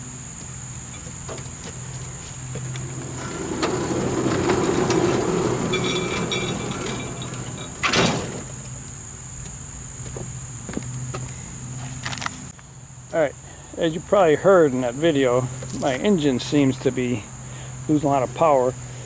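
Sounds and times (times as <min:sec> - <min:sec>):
crickets chirring: 0:00.0 - 0:19.0
sawmill gas engine running: 0:01.8 - 0:07.9.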